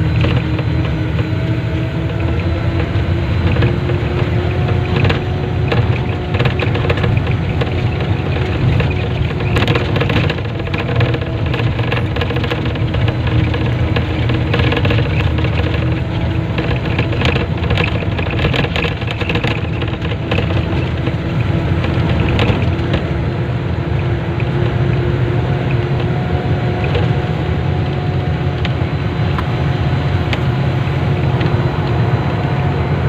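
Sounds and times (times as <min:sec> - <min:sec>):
vehicle engine rumble: 0:00.0 - 0:33.0.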